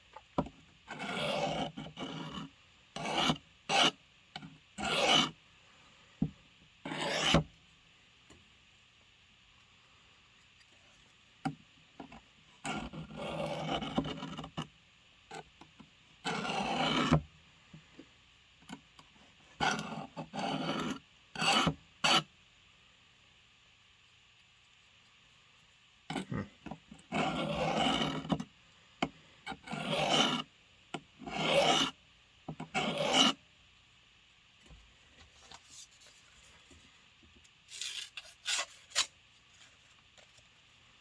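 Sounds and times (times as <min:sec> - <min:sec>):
blade rasping on sharpening stone: 0:00.9 - 0:04.0, 0:04.8 - 0:05.3, 0:06.9 - 0:07.4, 0:19.6 - 0:22.2, 0:27.1 - 0:28.4, 0:29.6 - 0:30.5, 0:31.3 - 0:32.0, 0:32.7 - 0:33.4.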